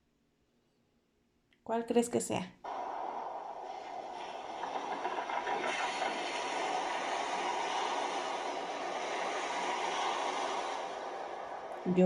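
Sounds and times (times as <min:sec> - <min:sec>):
boat at sea rushing noise: 0:02.7 - 0:12.0.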